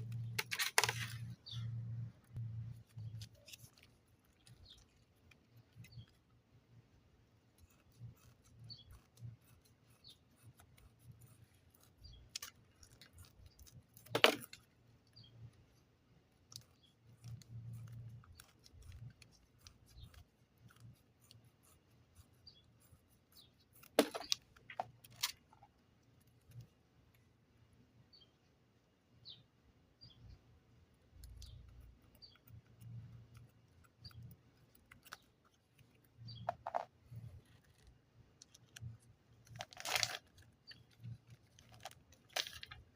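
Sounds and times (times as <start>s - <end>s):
scissors snipping clay: 7.4s - 14.8s, 16.3s - 25.5s.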